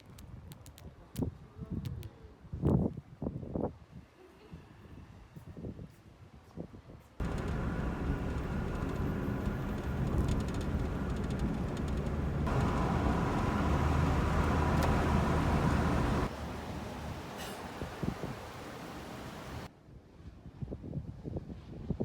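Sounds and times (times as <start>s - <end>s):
faint steady whine: 7.2s - 19.7s
vehicle engine rumbling: 7.2s - 19.7s.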